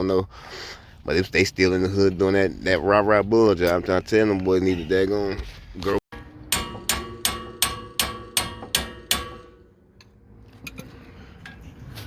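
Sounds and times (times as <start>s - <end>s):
hammer striking metal hub: 6.1s - 9.8s.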